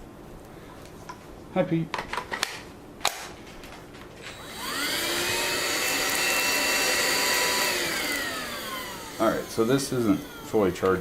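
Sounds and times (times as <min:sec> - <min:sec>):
vacuum motor whining: 0:04.2 - 0:11.0.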